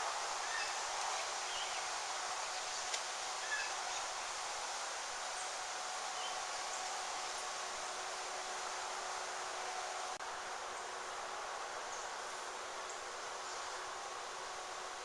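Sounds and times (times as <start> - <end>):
steady outdoor hiss: 0.0 - 15.0.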